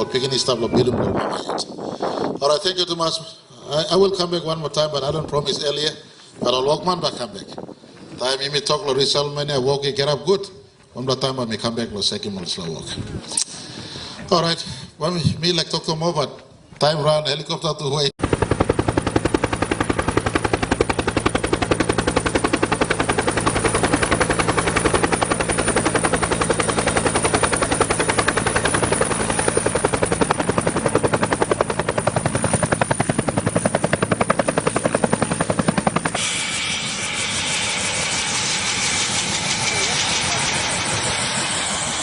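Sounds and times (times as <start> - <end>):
helicopter rotor chop: 18.2 - 42.0
turbine whine: 18.2 - 42.0.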